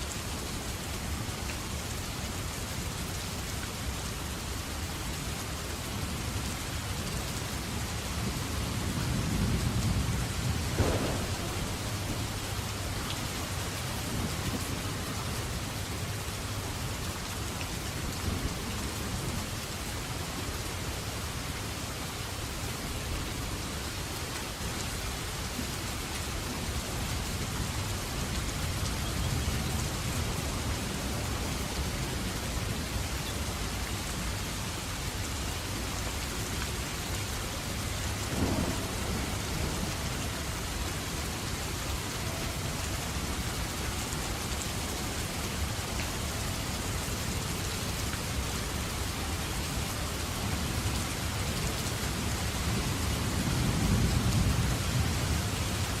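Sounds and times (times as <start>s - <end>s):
steady rain: 0.0s - 56.0s
thunder rumble: 8.4s - 15.1s, 38.2s - 41.2s
sharp thunder crack: 10.7s - 12.5s.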